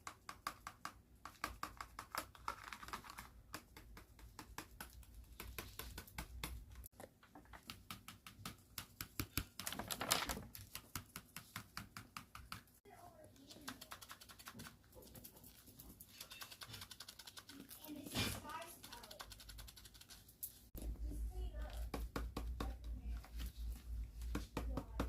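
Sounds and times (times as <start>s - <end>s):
paper rustling: 9.6s - 10.9s.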